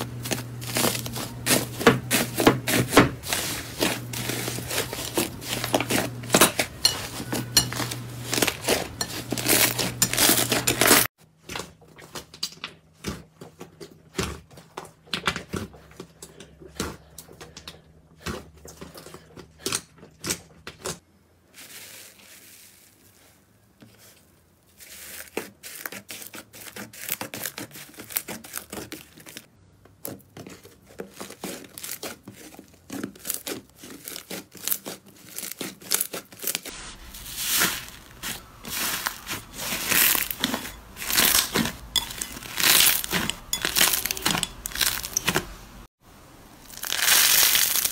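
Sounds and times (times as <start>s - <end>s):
slime crackling and popping: 33.2s - 45.4s, 46.7s - 47.9s.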